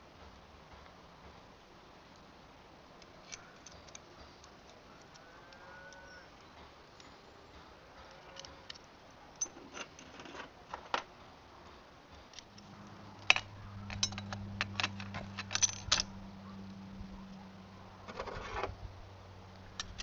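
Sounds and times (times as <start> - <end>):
low steady hum: 0.0 - 20.0
metallic clinks of clutch parts: 8.1 - 10.2, 12.3 - 16.2.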